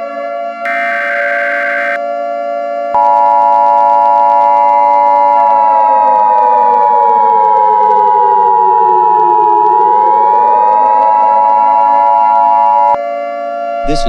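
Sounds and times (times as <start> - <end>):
siren wailing: 0.7 - 2.0
two-note electronic alarm tone: 0.7 - 2.0.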